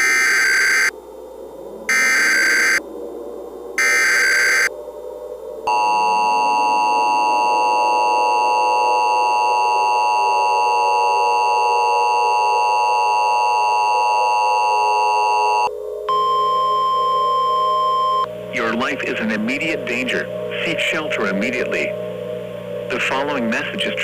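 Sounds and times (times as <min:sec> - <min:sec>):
two-tone alarm: 0:00.0 - 0:00.9, 0:01.9 - 0:02.8, 0:03.8 - 0:04.7, 0:05.7 - 0:22.0.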